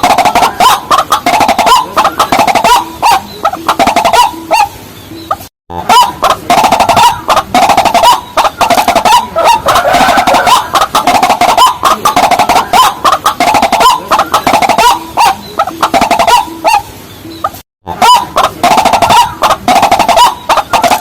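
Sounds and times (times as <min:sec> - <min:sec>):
water birds clucking calls: 0:00.0 - 0:21.0.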